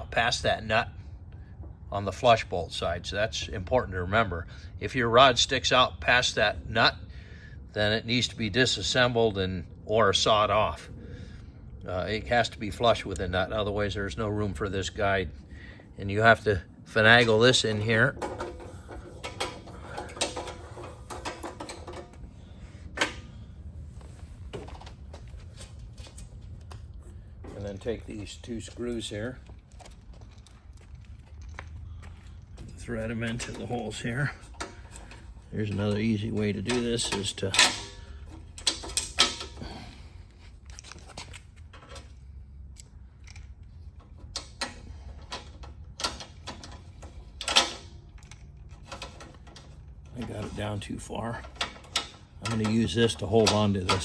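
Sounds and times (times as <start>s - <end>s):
steady low hum: 0.0s - 54.0s
metal hardware clicking and knocking: 17.0s - 22.3s, 22.9s - 23.4s, 32.4s - 40.0s, 40.6s - 54.0s.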